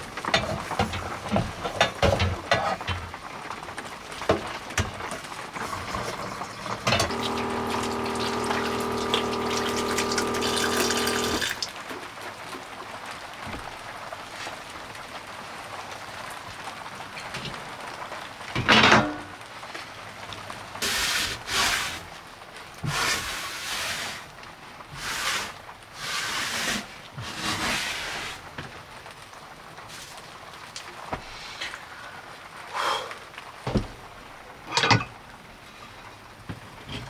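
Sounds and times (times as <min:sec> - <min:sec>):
water running into container: 0:04.1 - 0:12.1
steady hum: 0:06.8 - 0:11.6.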